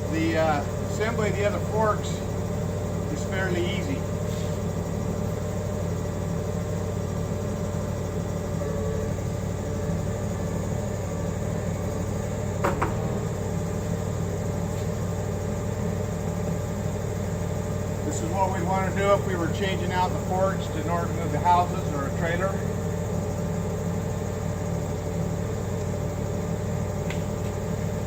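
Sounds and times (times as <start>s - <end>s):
forklift engine idling: 0.0s - 28.0s.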